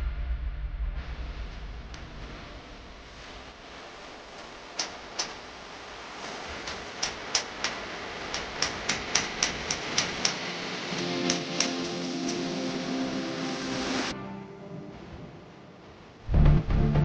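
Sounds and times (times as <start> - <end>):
steady hiss: 1.1 - 16.3.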